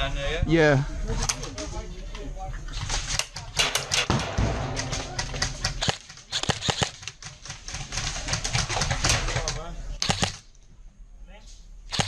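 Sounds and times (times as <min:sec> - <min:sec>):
airsoft guns firing: 0:02.8 - 0:10.5.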